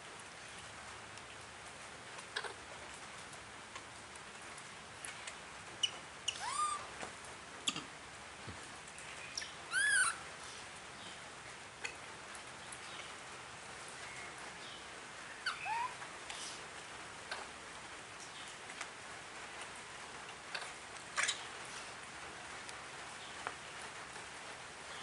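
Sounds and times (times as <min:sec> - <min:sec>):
baby monkey squeaks: 0:05.8 - 0:06.9, 0:09.7 - 0:10.2, 0:15.4 - 0:16.0.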